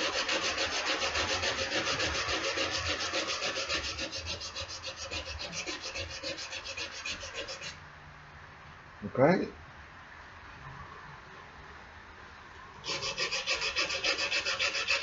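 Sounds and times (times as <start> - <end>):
sandpaper rasping on metal: 0.0 - 7.8, 12.8 - 15.0.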